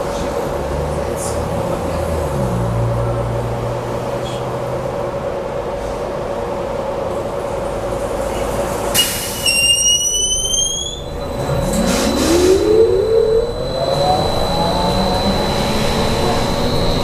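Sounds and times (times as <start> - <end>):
high-pitched electric whine: 10.2 - 17.0
lower whine rising in pitch: 10.4 - 17.0.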